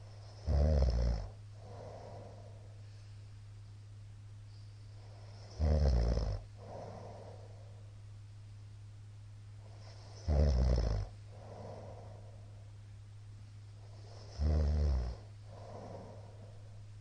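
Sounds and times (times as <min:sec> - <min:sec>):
steady low hum: 0:00.0 - 0:17.0
man snoring: 0:00.4 - 0:02.4, 0:05.4 - 0:07.3, 0:10.2 - 0:12.0, 0:14.0 - 0:16.4.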